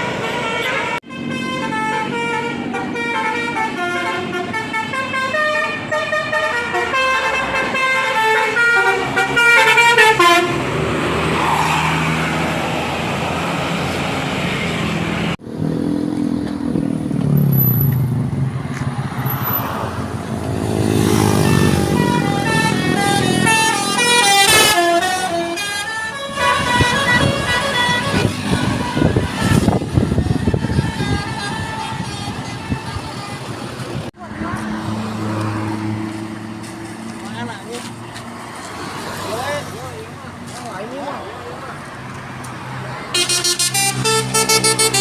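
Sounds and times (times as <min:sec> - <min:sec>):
musical bus horn tune: 0:00.0 - 0:11.1, 0:20.6 - 0:34.0, 0:43.1 - 0:45.0
bus engine rumble: 0:00.0 - 0:45.0
traffic noise: 0:00.0 - 0:45.0.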